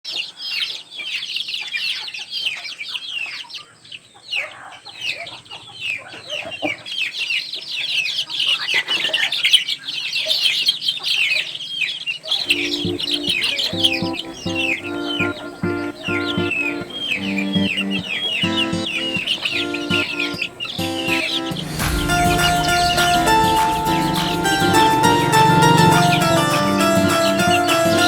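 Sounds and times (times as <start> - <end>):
baby chicks peeping: 10.2 - 28.0.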